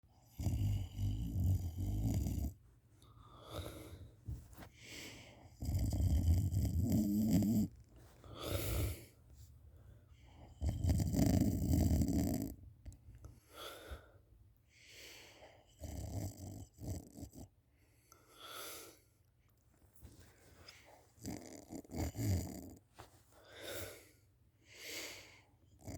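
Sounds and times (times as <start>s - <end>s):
person snoring: 0.2s - 2.5s, 5.0s - 7.7s, 8.4s - 9.1s, 10.6s - 12.5s
quiet breaths out: 3.0s - 5.7s, 7.9s - 10.6s, 13.2s - 15.8s, 20.0s - 21.2s, 22.8s - 25.8s.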